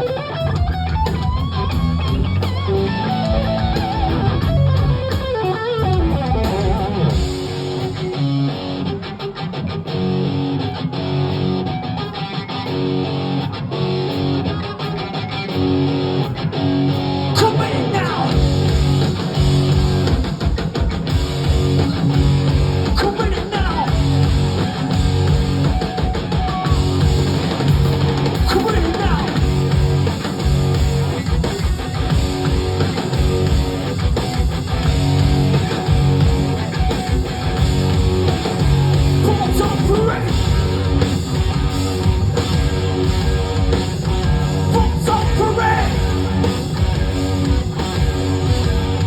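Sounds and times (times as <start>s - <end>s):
bass guitar: 0.0s - 49.0s
distorted electric guitar riffing: 0.0s - 49.0s
pounding drum kit: 0.5s - 8.2s, 17.4s - 49.0s.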